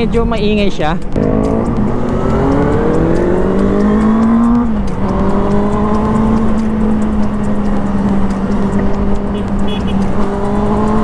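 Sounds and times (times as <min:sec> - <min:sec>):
motorcycle engine revving: 0:01.1 - 0:11.0.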